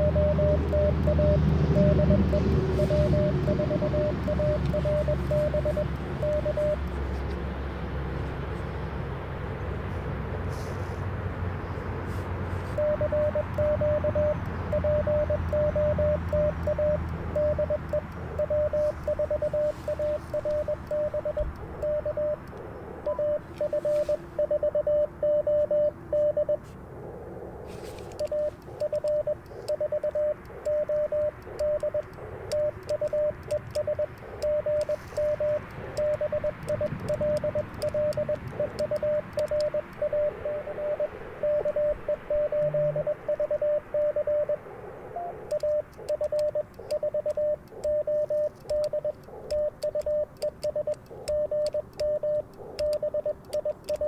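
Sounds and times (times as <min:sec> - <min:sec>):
morse code tone: 0:00.0 - 0:07.0, 0:12.7 - 0:26.6, 0:28.1 - 0:54.0
radio hiss: 0:17.1 - 0:48.5.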